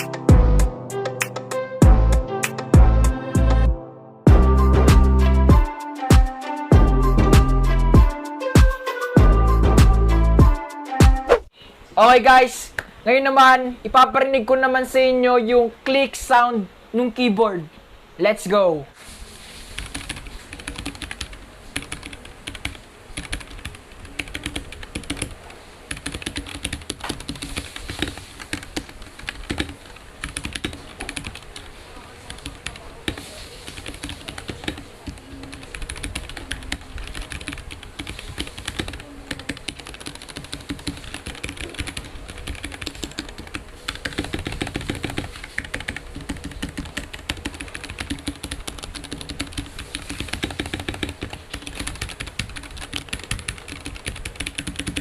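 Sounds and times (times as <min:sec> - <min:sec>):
fast mechanical keyboard typing: 0:19.8 - 0:31.6, 0:32.3 - 0:55.0.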